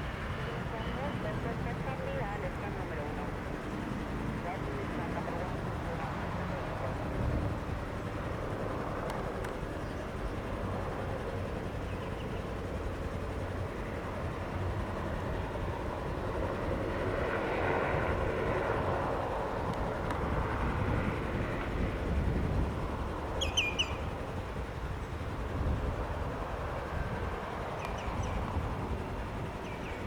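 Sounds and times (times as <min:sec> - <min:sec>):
turboprop engine running: 0:00.0 - 0:30.0
bird chirping: 0:23.4 - 0:24.1, 0:27.8 - 0:28.4.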